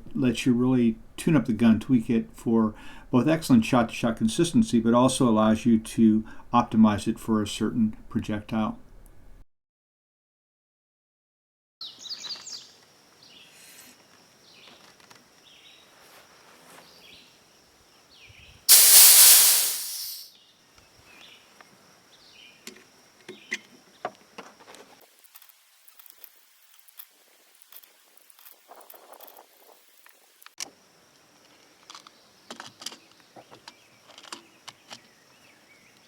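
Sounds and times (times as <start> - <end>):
high chirps: 18.7 - 20.3
loud rushing hiss: 18.7 - 20.3
steady high thin tone: 18.7 - 20.3.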